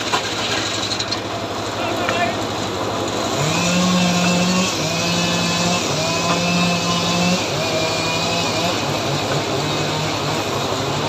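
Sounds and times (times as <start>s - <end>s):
chainsaw engine running at high speed: 0.1s - 11.0s.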